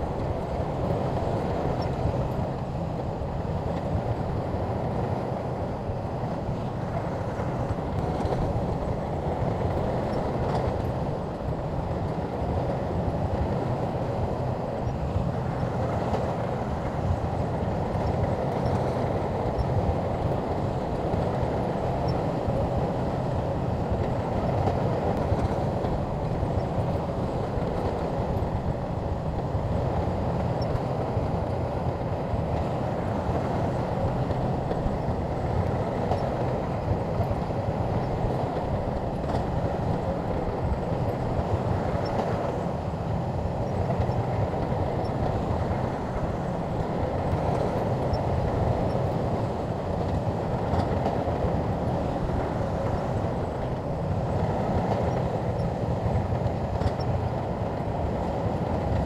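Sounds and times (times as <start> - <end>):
bulldozer pushing earth: 0.0 - 59.0.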